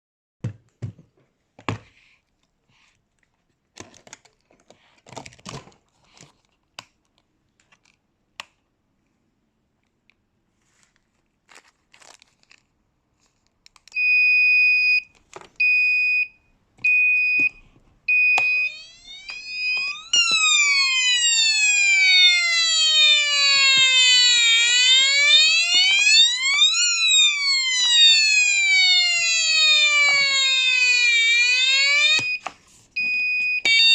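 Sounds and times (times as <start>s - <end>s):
electronic siren: 18.1s - 32.5s, 33.3s - 33.9s.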